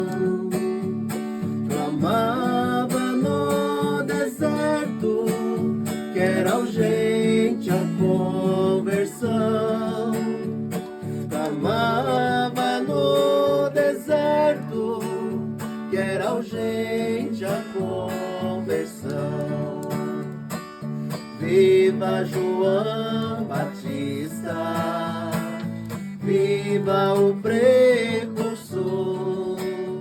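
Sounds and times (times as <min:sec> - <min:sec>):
person singing: 0:00.0 - 0:01.0, 0:01.6 - 0:10.5, 0:11.2 - 0:20.4, 0:26.2 - 0:30.0
acoustic guitar strumming: 0:00.0 - 0:30.0.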